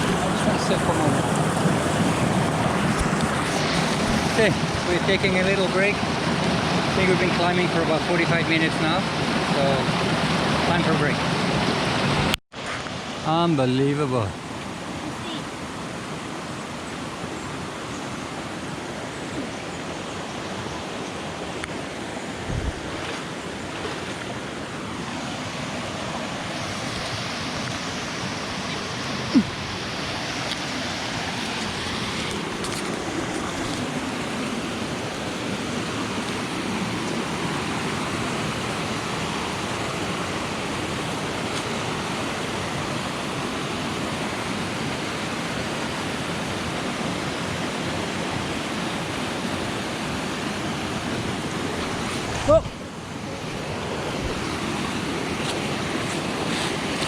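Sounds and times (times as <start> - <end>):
waterfall rushing: 0.0 - 12.4, 24.4 - 57.0.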